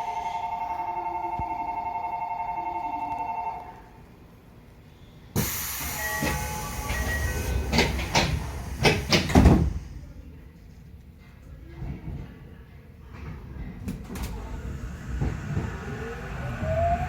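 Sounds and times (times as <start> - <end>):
loud air hiss: 5.3 - 7.6
train doors knocking shut: 5.4 - 9.8.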